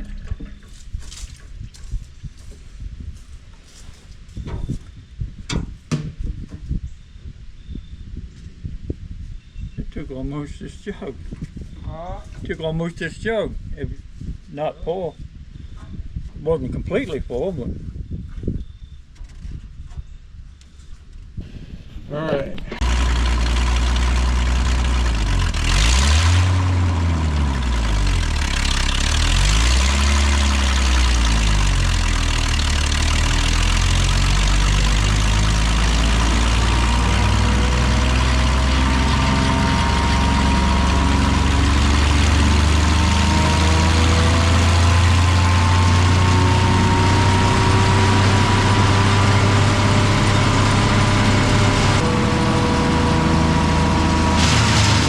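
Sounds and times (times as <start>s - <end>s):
woodchipper engine running: 22.7s - 55.0s.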